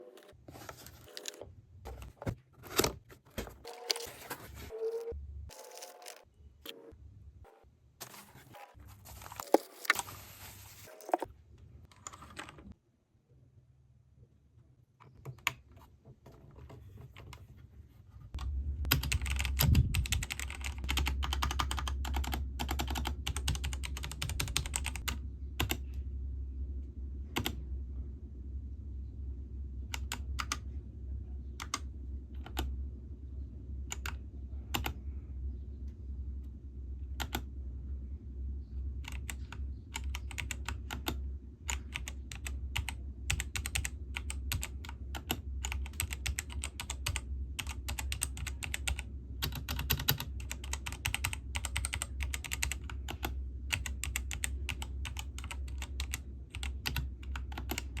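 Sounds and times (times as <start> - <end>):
steady low hum: 0.0 - 14.5, 16.6 - 58.0
mechanical keyboard typing: 18.9 - 25.8, 39.1 - 58.0.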